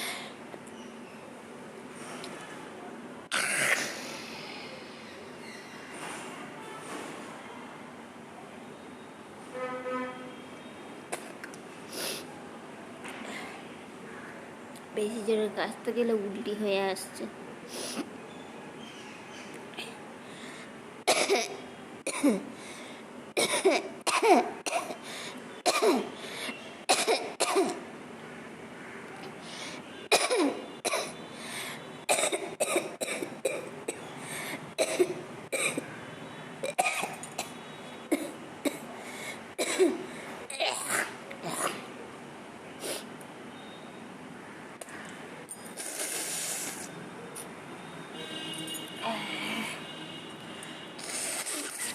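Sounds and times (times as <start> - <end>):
person making hissing mouth sounds: 3.4 - 4.8, 45.7 - 46.9, 51.0 - 51.9
person coughing hard: 21.1 - 22.5, 23.4 - 25.0, 25.7 - 26.1, 26.9 - 27.8, 30.1 - 31.1, 32.1 - 34.0, 34.8 - 35.8, 36.7 - 37.5, 39.6 - 41.8.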